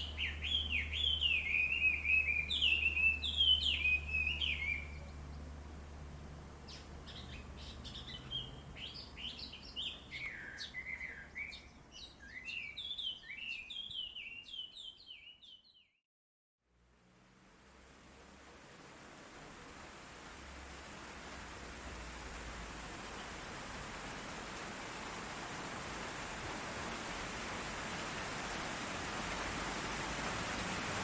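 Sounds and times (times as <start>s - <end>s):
birds chirping and singing: 0.0s - 5.2s, 6.7s - 15.9s.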